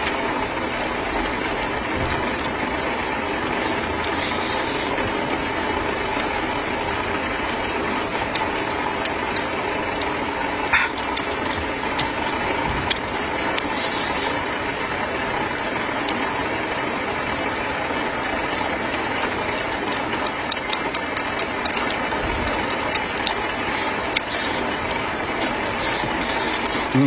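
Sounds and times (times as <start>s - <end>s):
chopsticks clicking on dishes: 19.5s - 27.0s.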